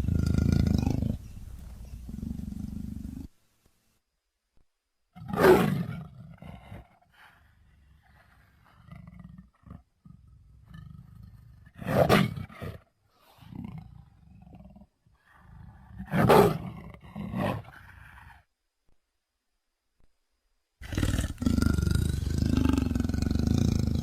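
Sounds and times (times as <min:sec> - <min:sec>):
low rumbling creature growl: 0:00.0 - 0:01.3, 0:20.8 - 0:24.0
loud creature roars: 0:20.8 - 0:24.0.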